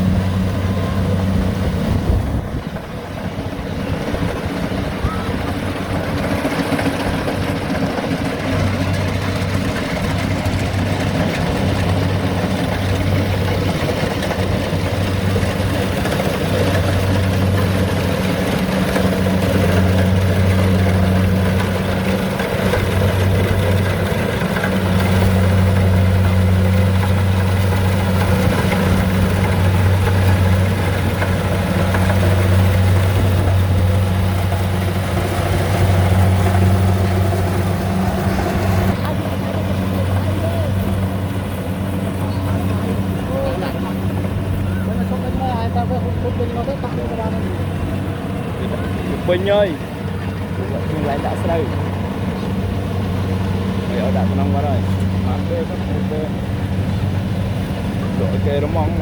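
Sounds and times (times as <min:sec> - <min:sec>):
combine harvester engine hum: 0:00.0 - 0:59.0.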